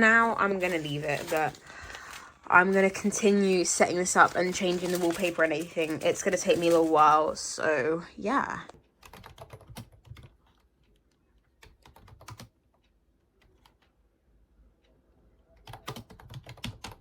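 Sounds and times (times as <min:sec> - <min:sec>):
typing on keyboard: 0:02.7 - 0:07.4, 0:08.9 - 0:14.0, 0:15.5 - 0:17.0.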